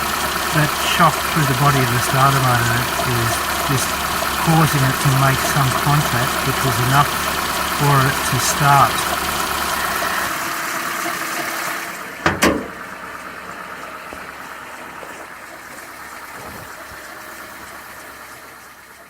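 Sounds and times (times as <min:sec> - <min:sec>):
car engine idling: 0:00.0 - 0:19.0
sharp thump: 0:12.2 - 0:12.8.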